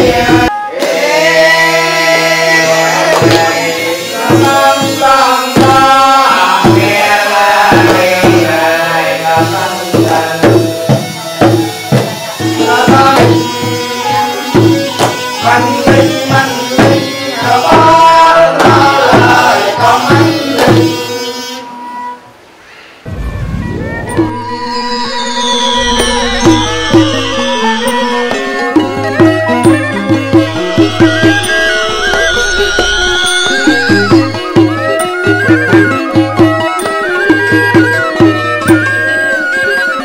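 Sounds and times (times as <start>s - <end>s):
melody instruments: 23.1s - 35.9s.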